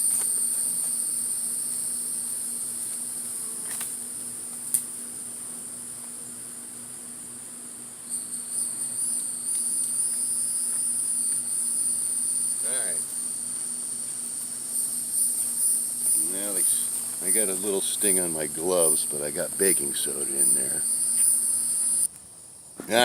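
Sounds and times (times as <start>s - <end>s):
bees buzzing: 0.0s - 22.1s
high insect trill: 0.0s - 23.0s.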